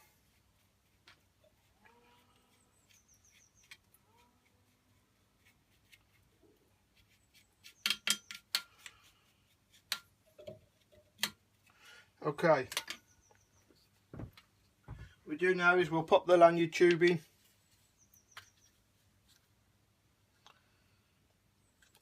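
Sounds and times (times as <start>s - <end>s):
tools clicking and knocking: 7.7s - 8.9s, 12.7s - 13.1s.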